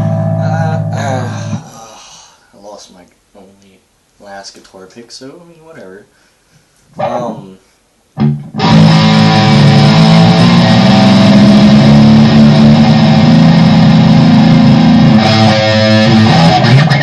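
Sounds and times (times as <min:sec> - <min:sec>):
guitar chords strummed: 0:00.0 - 0:01.6, 0:08.2 - 0:17.0.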